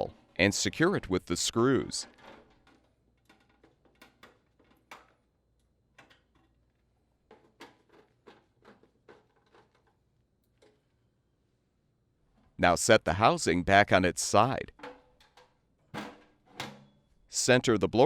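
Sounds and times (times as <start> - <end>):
metal parts clicking and tapping: 2.0 - 10.9, 14.8 - 17.0.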